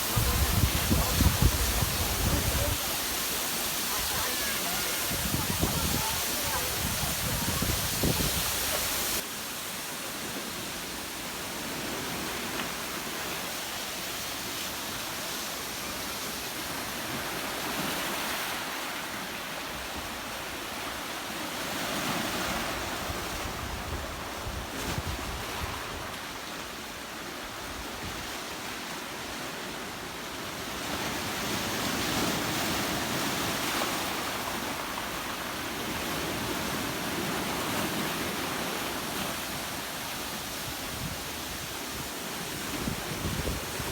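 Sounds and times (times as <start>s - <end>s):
waterfall rushing: 0.0s - 21.6s, 31.2s - 43.9s
surf: 0.0s - 43.9s.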